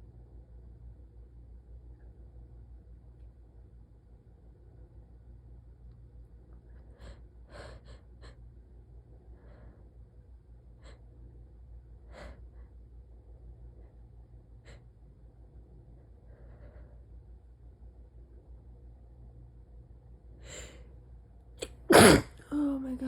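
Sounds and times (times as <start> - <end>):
steady low hum: 0.0 - 23.0
stifled sneezes: 21.6 - 22.4.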